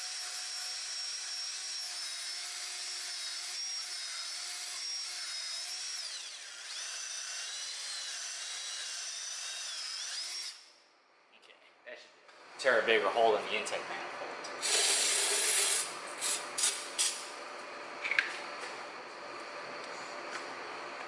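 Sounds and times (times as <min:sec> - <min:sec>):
power tool grinding metal: 0:00.0 - 0:10.6, 0:14.6 - 0:17.2.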